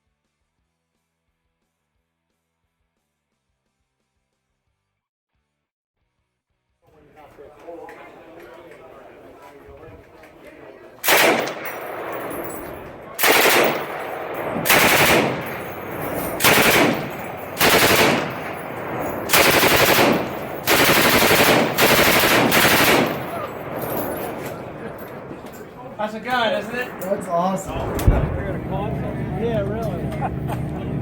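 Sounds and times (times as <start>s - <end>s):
machine gun bursts: 11.0s - 24.7s
gunshot echoes: 11.0s - 25.2s.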